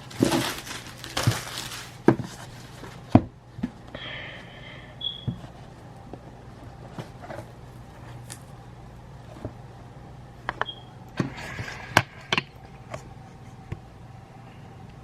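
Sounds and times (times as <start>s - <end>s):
cardboard rustling scrape: 0.0s - 3.0s
steady low hum: 0.0s - 15.0s.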